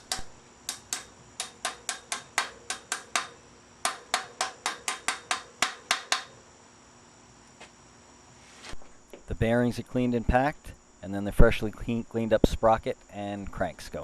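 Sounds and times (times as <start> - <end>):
hammer tapping on metal: 0.0 - 6.4.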